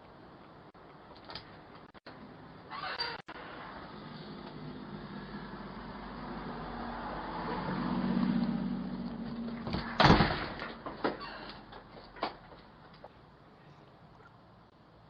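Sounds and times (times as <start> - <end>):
vehicle engine humming: 3.3 - 10.0.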